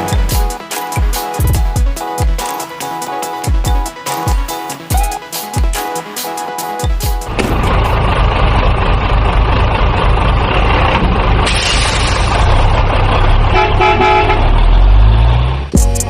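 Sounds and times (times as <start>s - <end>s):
heavy truck engine rumbling: 6.3s - 16.0s
truck horn honk: 13.4s - 14.8s.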